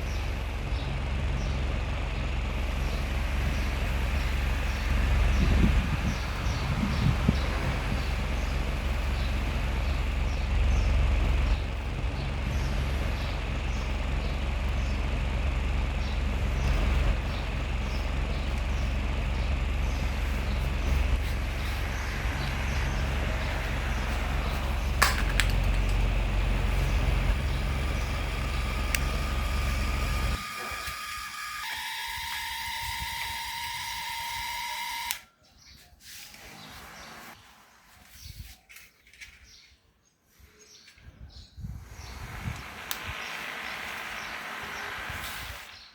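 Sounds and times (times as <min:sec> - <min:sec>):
airflow rumbling on microphone: 0:00.0 - 0:30.4, 0:41.5 - 0:45.9
ceiling fan motor hum: 0:00.0 - 0:35.2, 0:41.6 - 0:45.8.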